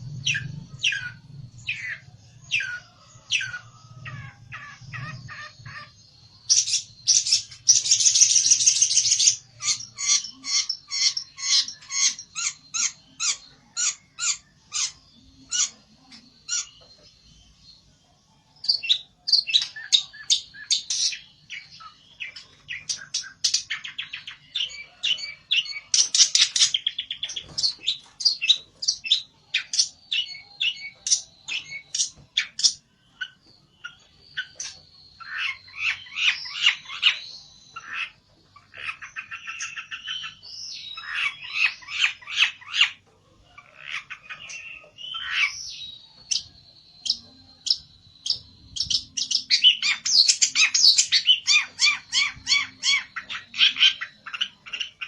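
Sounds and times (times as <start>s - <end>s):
buzzy rattling bird trill: 0.0s - 17.1s, 43.7s - 55.0s.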